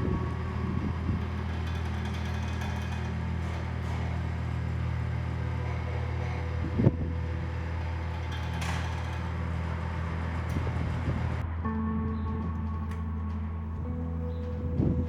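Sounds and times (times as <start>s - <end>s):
piston aircraft engine droning: 0.0s - 15.0s.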